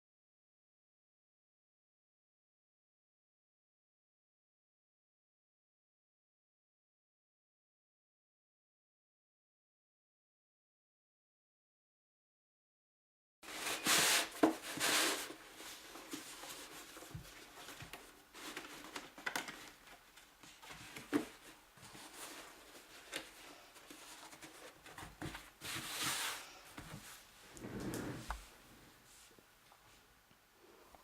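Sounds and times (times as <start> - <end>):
fabric rustling: 25.6 - 29.3.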